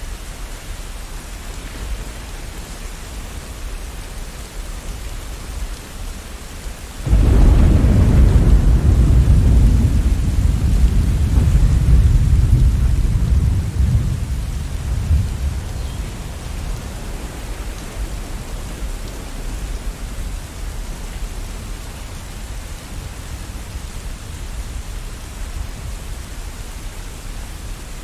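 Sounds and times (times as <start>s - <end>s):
steady rain: 0.0s - 28.0s
thunder rumbling: 7.0s - 21.7s.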